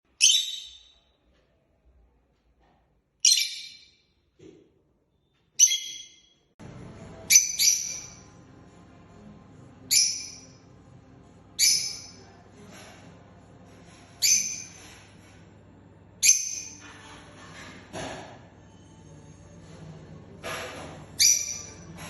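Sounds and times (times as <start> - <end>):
parrot high-pitched calls: 5.6 - 6.3, 7.3 - 8.2, 11.6 - 12.2, 21.2 - 21.9.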